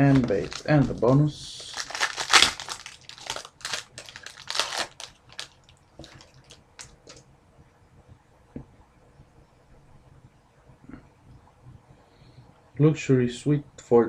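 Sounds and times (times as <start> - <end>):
card pack wrapper crinkling: 0.0 - 7.2.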